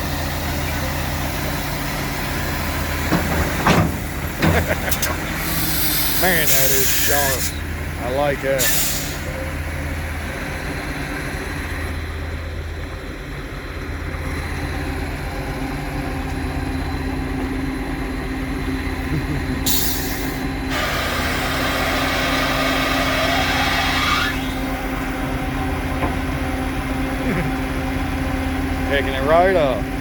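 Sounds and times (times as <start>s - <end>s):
diesel truck engine running: 0.0s - 30.0s
air brake hiss: 5.3s - 7.6s, 8.6s - 9.3s, 19.6s - 22.9s.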